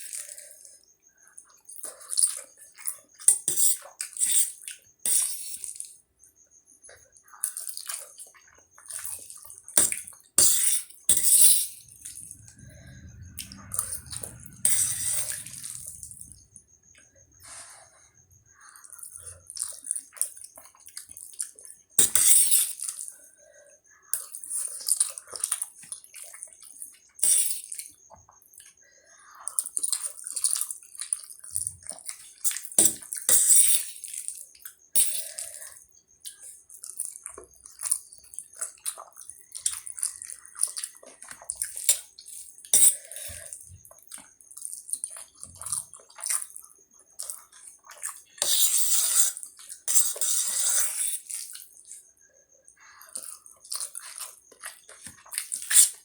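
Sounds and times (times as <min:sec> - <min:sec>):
chewing: 0:29.4 - 0:33.3, 0:34.2 - 0:52.1, 0:52.8 - 0:56.0
noodle slurping: 0:47.2 - 0:51.7.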